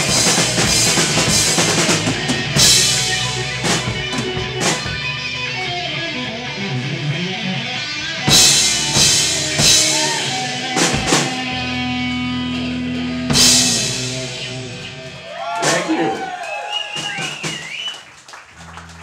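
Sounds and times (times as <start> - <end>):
ringing guitar chords: 0.0 - 15.2.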